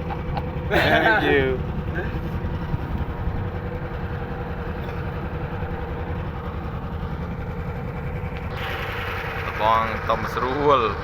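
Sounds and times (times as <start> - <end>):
engine droning steadily: 0.0 - 11.0.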